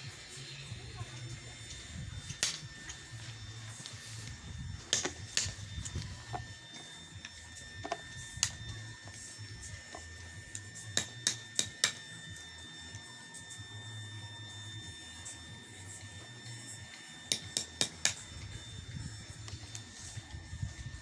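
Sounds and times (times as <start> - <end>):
low steady hum: 0.0 - 21.0
sharp clicks and knocks: 4.9 - 6.5.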